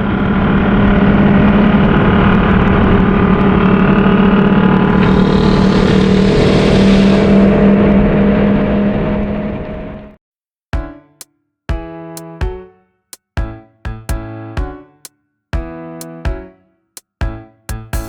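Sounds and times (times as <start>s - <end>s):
motorcycle engine running: 0.0s - 8.1s.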